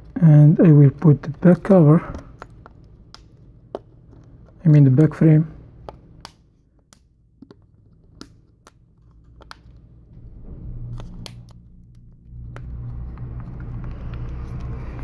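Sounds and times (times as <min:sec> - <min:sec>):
low rumble: 0:09.9 - 0:15.0.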